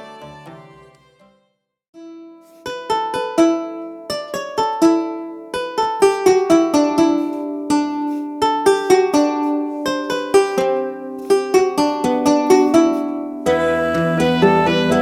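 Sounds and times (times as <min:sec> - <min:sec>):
plucked string melody: 0:02.0 - 0:15.0.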